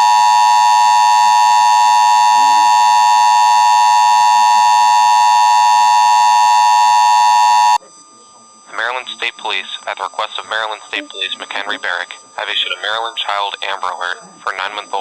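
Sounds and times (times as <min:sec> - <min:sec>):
two-tone electronic alarm tone: 0:00.0 - 0:07.8.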